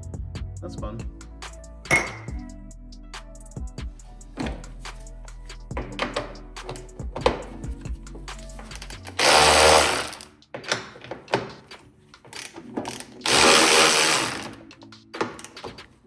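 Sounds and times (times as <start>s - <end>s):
tools clicking and knocking: 1.9s - 2.4s, 5.7s - 15.9s
power tool running: 9.2s - 10.2s, 13.3s - 14.5s.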